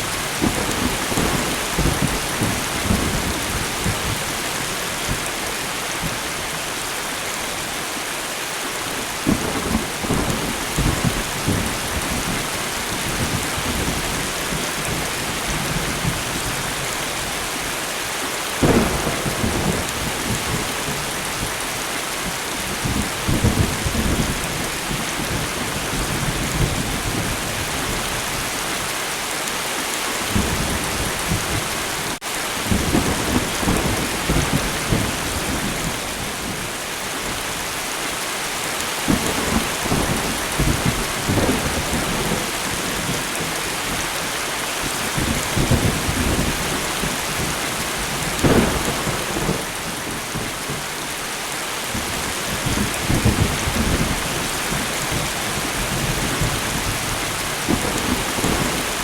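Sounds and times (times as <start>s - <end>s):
rain falling: 0.0s - 59.0s
thunder rumbling: 18.6s - 28.0s, 39.0s - 44.2s, 44.9s - 50.9s.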